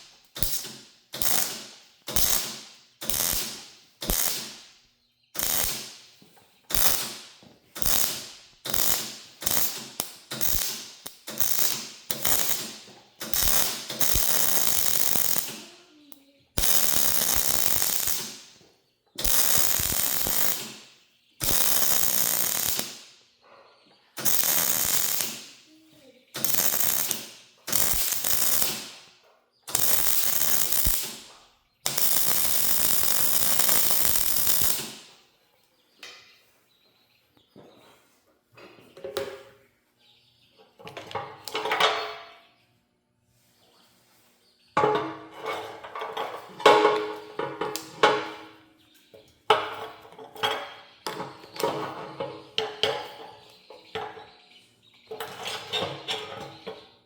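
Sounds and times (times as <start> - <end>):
arc welder bursts: 0.0 - 4.8, 5.4 - 6.0, 6.7 - 15.8, 16.6 - 18.5, 19.2 - 23.1, 24.2 - 25.7, 26.3 - 29.1, 29.7 - 35.1.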